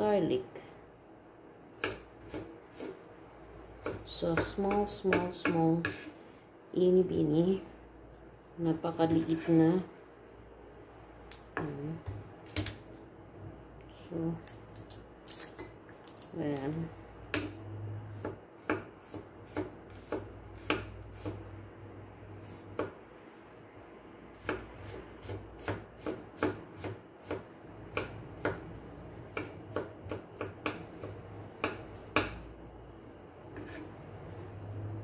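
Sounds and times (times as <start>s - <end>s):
low steady hum: 0.0s - 35.0s
knife chopping on cutting board: 1.8s - 3.0s, 3.8s - 6.1s, 17.3s - 21.4s, 22.5s - 23.0s, 24.4s - 28.6s, 29.3s - 32.4s.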